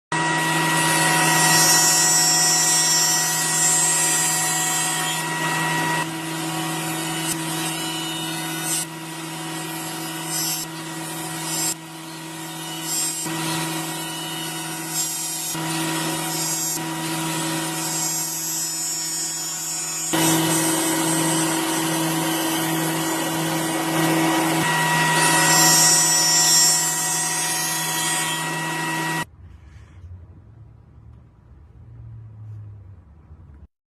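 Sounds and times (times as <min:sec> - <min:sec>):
wood router cutting wood: 0:00.1 - 0:29.3.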